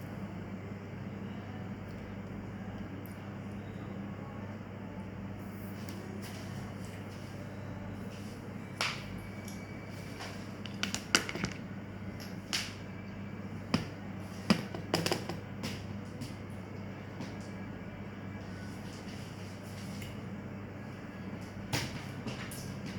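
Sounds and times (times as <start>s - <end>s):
steady low hum: 0.0s - 22.9s
clicks and knocks of handled items: 10.6s - 11.6s.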